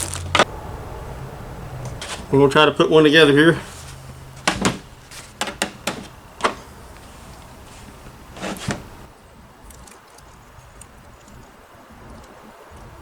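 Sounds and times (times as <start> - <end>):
knocks of hardware: 3.6 - 9.0
faint light ticks: 9.7 - 13.0.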